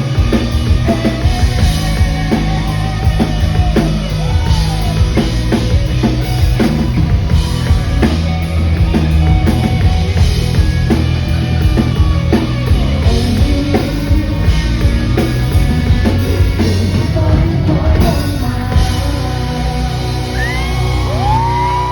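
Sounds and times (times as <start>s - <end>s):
drum kit beating: 0.0s - 21.9s
live rock band playing: 0.0s - 21.9s.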